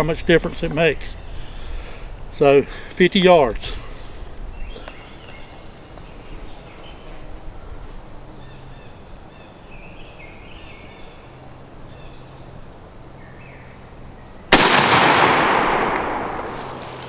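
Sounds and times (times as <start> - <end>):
shotgun blast with echo: 14.5 - 16.9.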